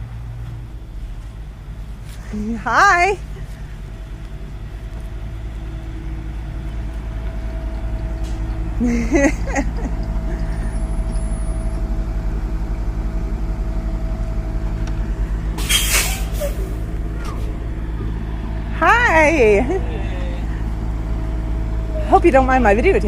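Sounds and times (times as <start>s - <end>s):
large vehicle engine idling: 0.0s - 23.0s
hissing burst: 15.6s - 17.4s.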